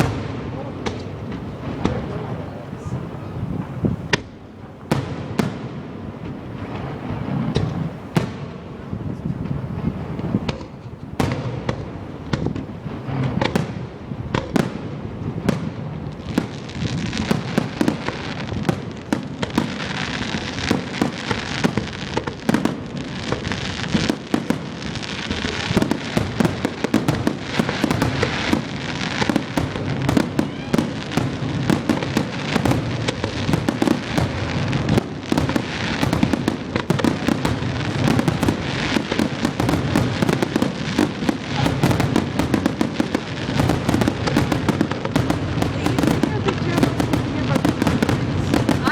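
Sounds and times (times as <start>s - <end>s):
fireworks bangs and crackling: 0.0s - 48.9s.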